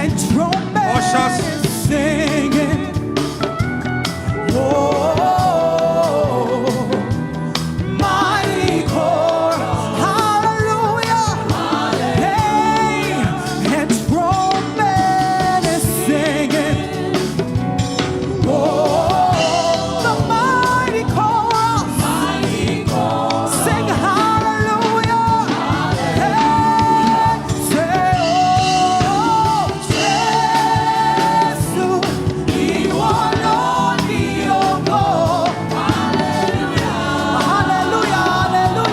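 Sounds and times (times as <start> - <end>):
person singing: 0.0 - 3.1, 4.3 - 17.5
band playing: 0.0 - 38.9.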